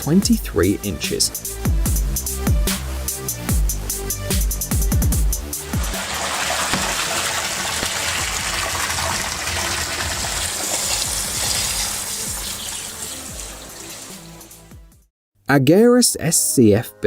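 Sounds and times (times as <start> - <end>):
water gushing: 5.6 - 14.7.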